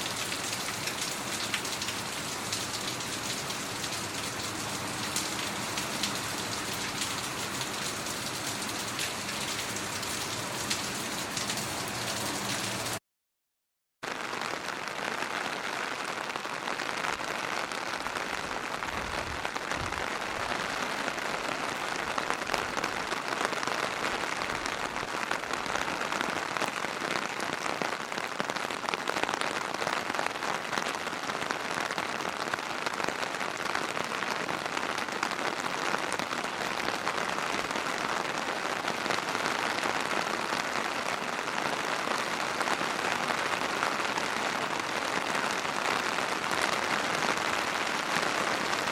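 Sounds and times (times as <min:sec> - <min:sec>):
steady rain falling: 0:00.0 - 0:13.0, 0:14.1 - 0:48.9.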